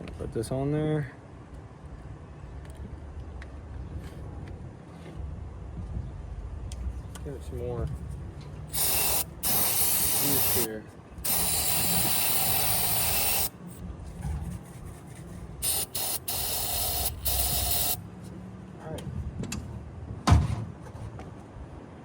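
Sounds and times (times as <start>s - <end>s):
aerosol spray hissing: 8.7s - 13.6s, 15.6s - 18.0s.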